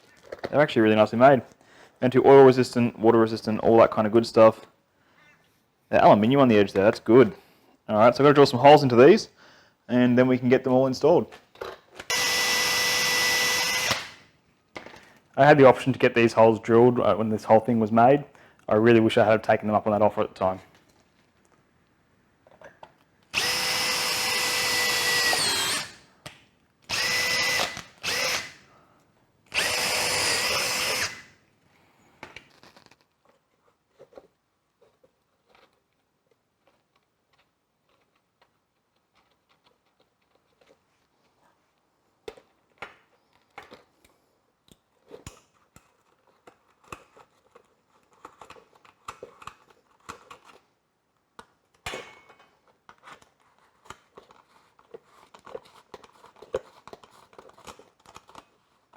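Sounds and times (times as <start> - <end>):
power drill motor whine: 12.1 - 14.2, 23.3 - 26.0, 26.9 - 28.6, 29.5 - 31.3
light clicks and handling noises: 32.2 - 58.9.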